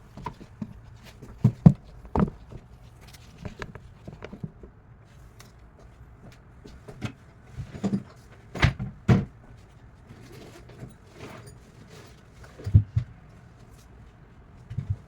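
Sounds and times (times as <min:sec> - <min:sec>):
sharp knocks and clunks: 0:00.2 - 0:02.7.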